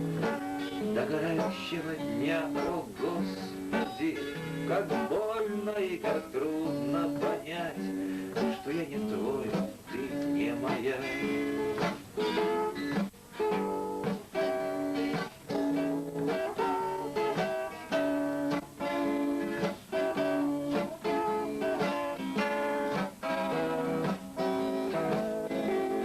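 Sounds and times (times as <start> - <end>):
acoustic guitar chords: 0.0 - 26.0
person singing: 0.1 - 12.5.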